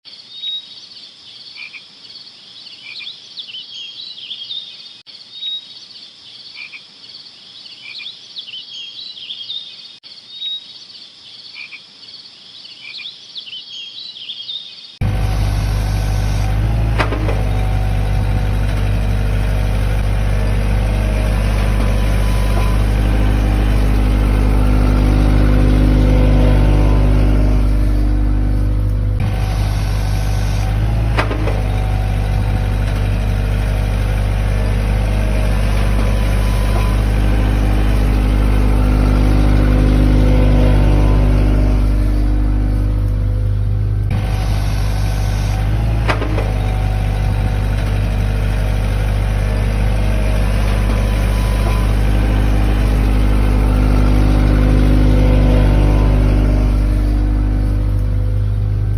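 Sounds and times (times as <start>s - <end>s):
excavator engine running: 15.0s - 58.9s.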